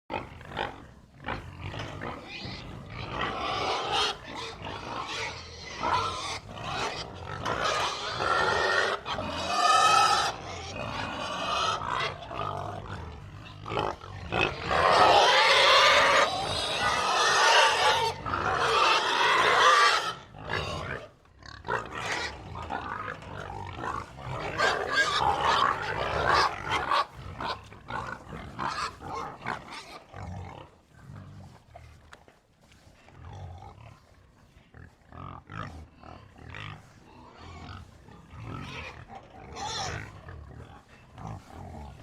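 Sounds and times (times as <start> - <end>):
pigs grunting: 0.1 - 42.0
pig squealing: 1.3 - 12.8, 13.5 - 21.1, 23.8 - 30.0, 38.5 - 40.4.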